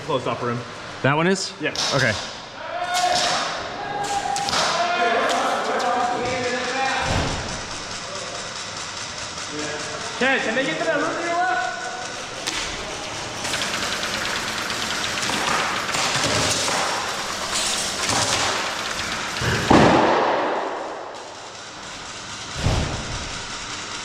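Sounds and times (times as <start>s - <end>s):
airsoft guns firing: 12.1s - 21.4s
loud bang: 19.4s - 21.1s.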